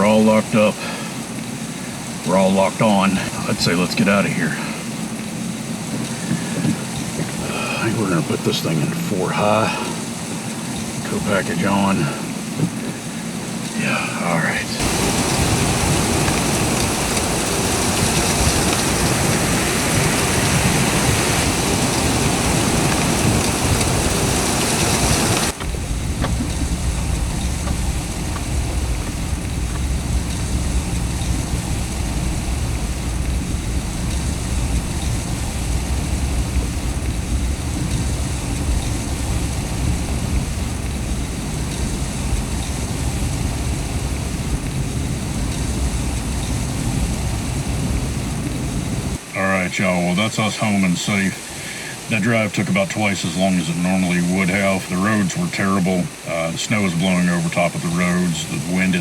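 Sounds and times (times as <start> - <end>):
loud even hiss: 0.0 - 59.0
vehicle rumble from inside cab: 14.8 - 49.2.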